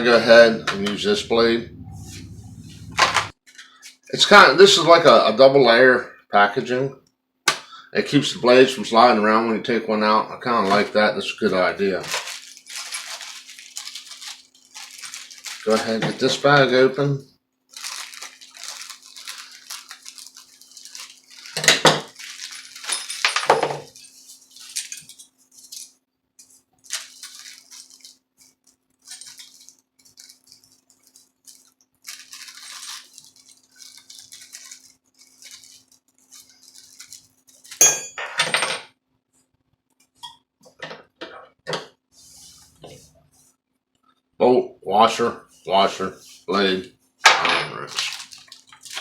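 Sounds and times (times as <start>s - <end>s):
plastic packaging crinkling: 10.4s - 17.0s, 17.7s - 37.8s, 47.8s - 49.0s
small metal parts clinking: 21.0s - 25.9s.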